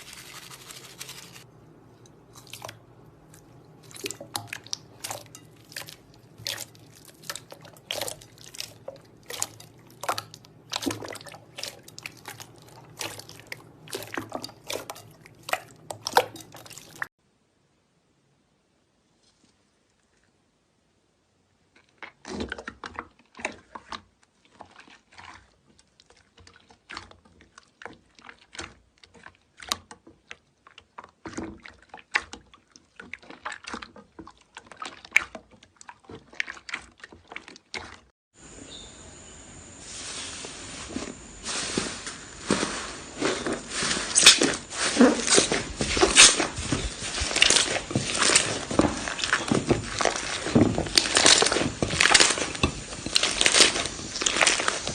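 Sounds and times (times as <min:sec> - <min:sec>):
steady hiss: 0:38.4 - 0:45.0.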